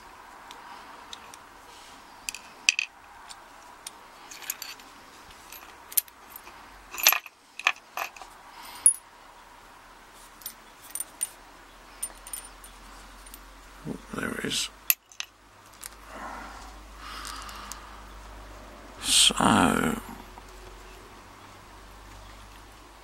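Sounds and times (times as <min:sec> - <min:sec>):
small metal parts clinking: 0:02.2 - 0:03.0, 0:03.8 - 0:09.0, 0:10.4 - 0:11.4, 0:12.0 - 0:13.4, 0:14.9 - 0:16.0.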